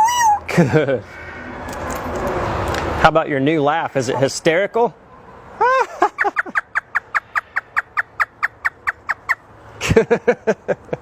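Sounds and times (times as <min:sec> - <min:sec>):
parrot imitating laughter: 0:05.6 - 0:10.0.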